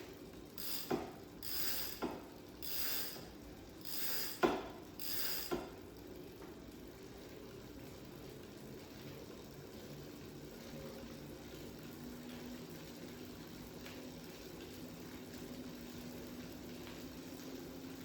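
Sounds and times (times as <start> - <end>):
bicycle freewheel hub ratcheting: 0.4 - 6.0.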